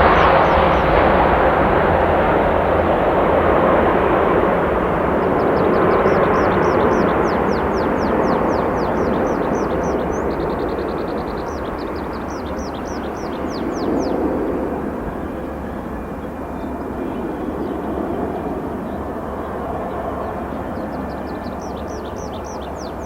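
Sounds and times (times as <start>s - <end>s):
songbird chirping and trilling: 0.0s - 1.3s, 5.1s - 23.0s
distant jet engine roar: 0.0s - 23.0s.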